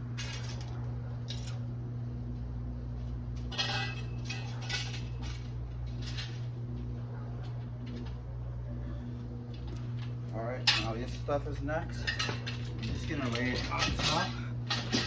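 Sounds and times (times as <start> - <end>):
steady low hum: 0.0 - 15.0
hard parts clinking and rattling: 0.1 - 1.6, 3.4 - 6.6, 9.5 - 15.0.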